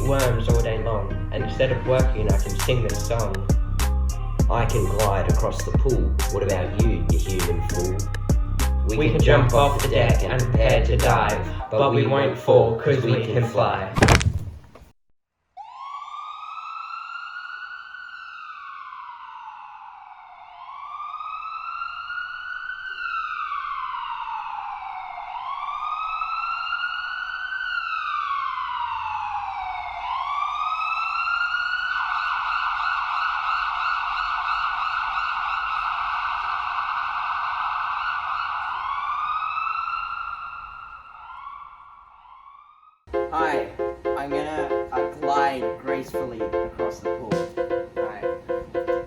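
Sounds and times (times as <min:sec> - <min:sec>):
siren wailing: 0:00.0 - 0:06.9, 0:15.6 - 0:44.0.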